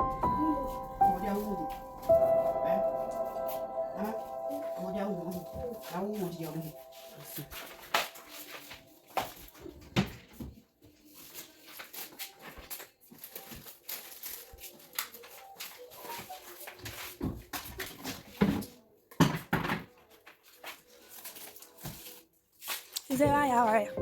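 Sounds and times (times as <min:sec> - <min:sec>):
household items knocking and clattering: 0:05.0 - 0:10.6, 0:16.1 - 0:20.2.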